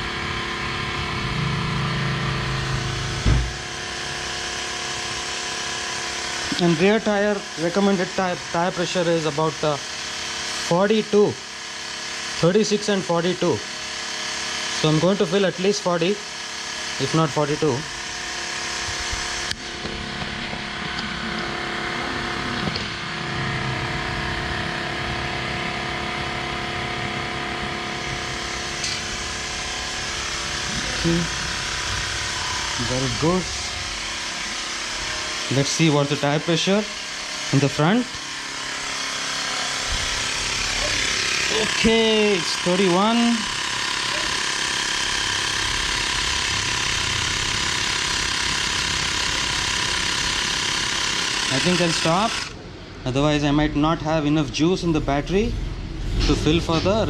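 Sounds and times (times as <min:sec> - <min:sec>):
motor humming: 0:00.0 - 0:57.0
knock: 0:03.2 - 0:03.6.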